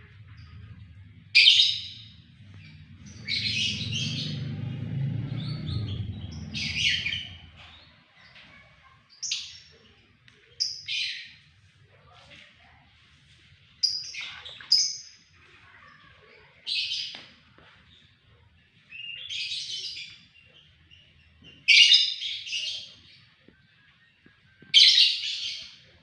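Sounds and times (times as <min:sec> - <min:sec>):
bird singing: 0:00.0 - 0:08.6, 0:17.9 - 0:26.0.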